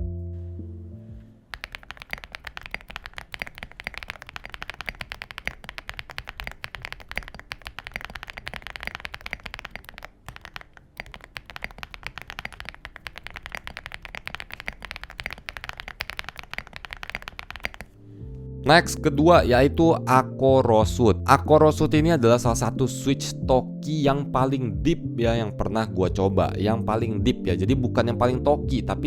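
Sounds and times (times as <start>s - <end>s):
typing on a mechanical keyboard: 1.5s - 18.0s.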